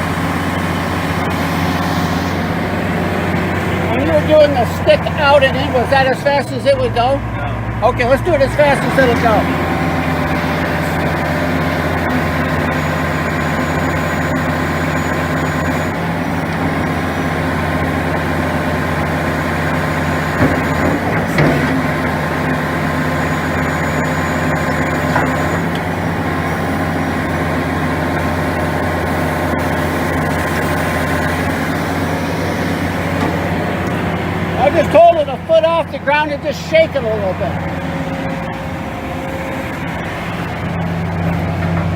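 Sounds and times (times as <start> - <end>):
excavator diesel engine running: 0.0 - 41.9
hydraulics working: 0.0 - 41.9.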